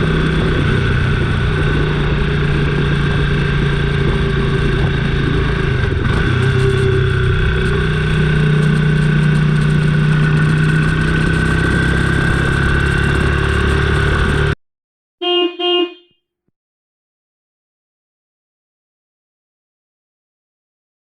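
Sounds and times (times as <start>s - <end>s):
motorcycle engine running: 0.0s - 14.6s.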